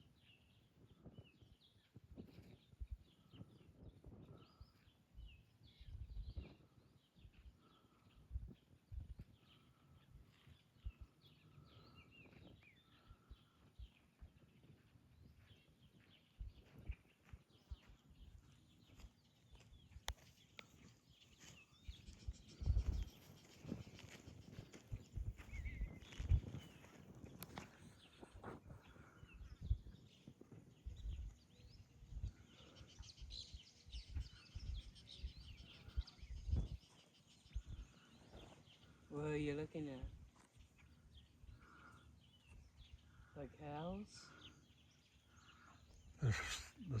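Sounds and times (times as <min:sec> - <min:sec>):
small birds chirping: 0:00.0 - 0:47.0
birds chirping and whistling: 0:20.2 - 0:39.0.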